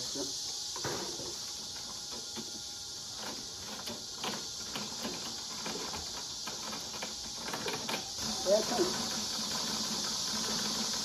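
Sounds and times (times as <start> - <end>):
insects chirring: 0.0 - 11.0
sewing machine stitching: 4.6 - 11.0.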